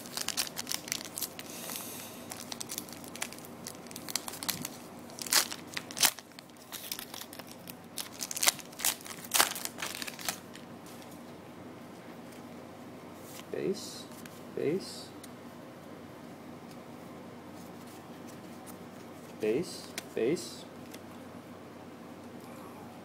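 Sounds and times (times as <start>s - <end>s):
card pack wrapper tearing: 0.0s - 1.5s, 2.3s - 10.6s.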